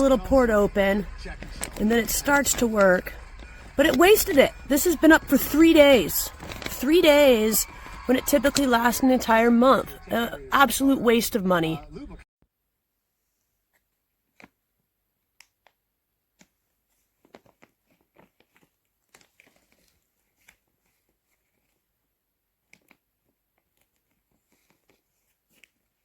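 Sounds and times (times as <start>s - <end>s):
plastic bag crinkling: 0.0s - 10.5s.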